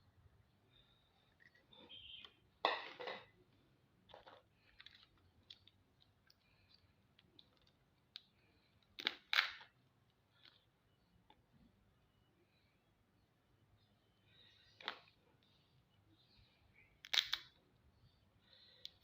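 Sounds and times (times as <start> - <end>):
crab shell cracking: 17.0 - 17.5.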